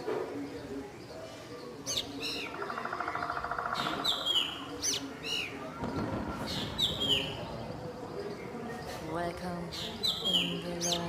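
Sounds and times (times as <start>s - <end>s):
bird sharp high calls: 1.9s - 5.6s.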